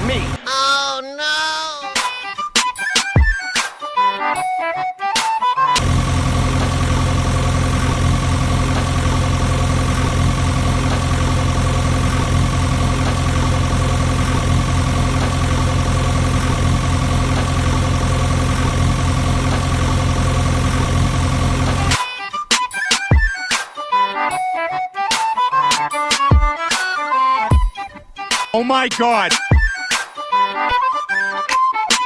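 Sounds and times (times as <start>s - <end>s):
tractor engine idling: 0.0s - 0.4s, 5.8s - 22.0s.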